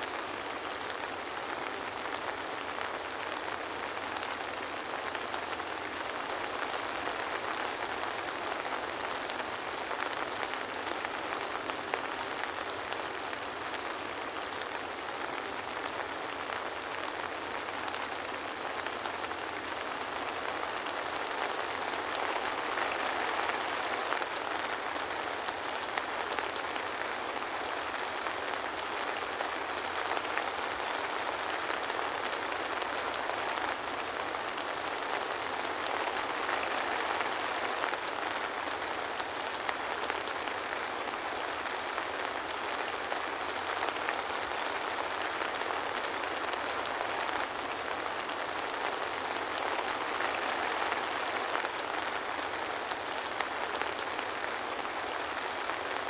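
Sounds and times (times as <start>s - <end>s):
soft rain patter: 0.0s - 56.0s.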